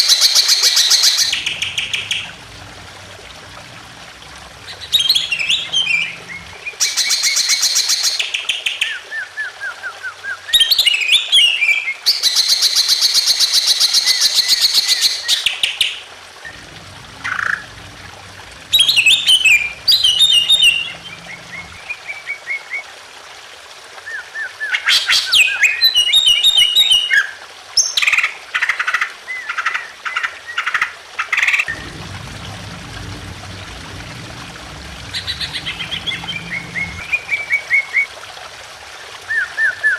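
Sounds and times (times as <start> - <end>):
trickle of water: 0.0 - 39.9
bird singing buzzy trills: 3.9 - 8.1, 16.5 - 22.2, 34.0 - 38.1.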